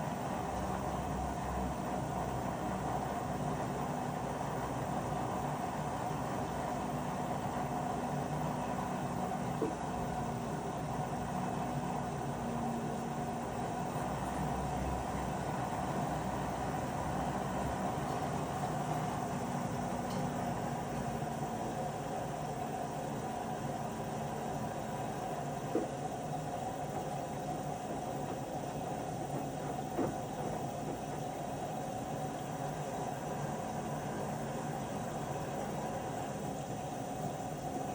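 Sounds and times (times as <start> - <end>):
washing machine droning: 0.0 - 37.9
washing machine clunk: 28.0 - 31.4.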